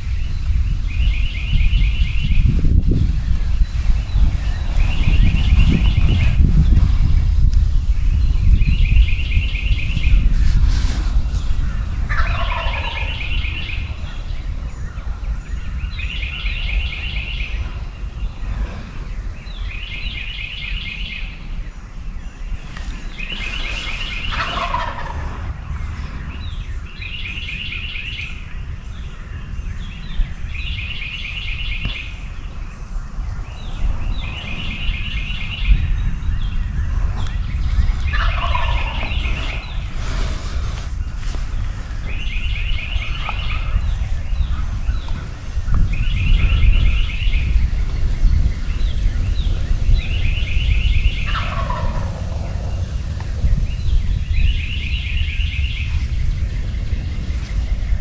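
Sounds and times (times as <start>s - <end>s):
low rumble: 0.0s - 58.0s
turkey gobbling: 12.1s - 13.7s, 23.3s - 25.7s, 38.0s - 39.9s, 42.9s - 43.7s, 51.2s - 52.5s.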